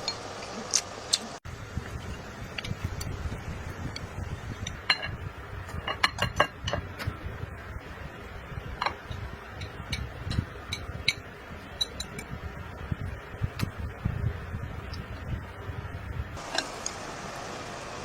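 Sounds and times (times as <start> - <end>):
utensils clinking against dishes: 4.8 - 6.9.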